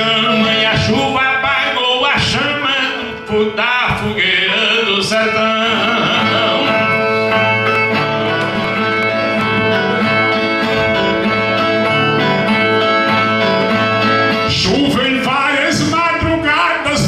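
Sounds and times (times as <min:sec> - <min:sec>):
plucked string instrument: 0:00.0 - 0:15.3.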